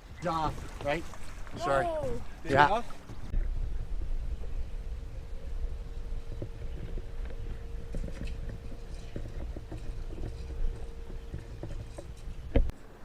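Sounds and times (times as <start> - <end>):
faint steady hum: 1.3 - 13.0
low rumble: 3.0 - 12.7.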